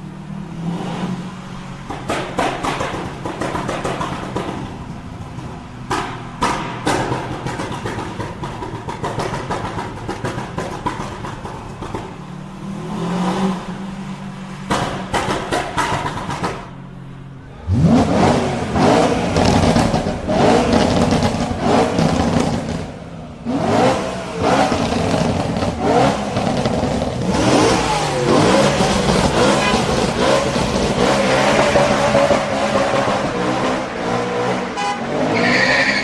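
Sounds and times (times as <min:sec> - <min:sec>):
car engine idling and revving: 0:00.0 - 0:36.0
exhaust pops and crackles: 0:01.8 - 0:12.3, 0:14.6 - 0:16.8, 0:18.4 - 0:23.0, 0:24.3 - 0:33.6.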